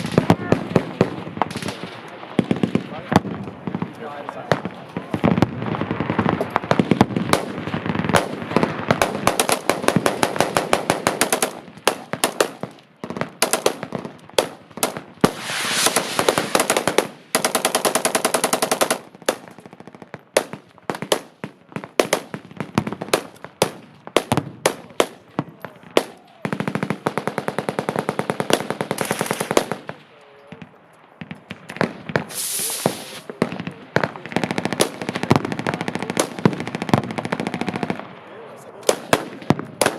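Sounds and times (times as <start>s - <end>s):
scattered gunshots: 14.4s - 19.4s, 38.8s - 39.9s.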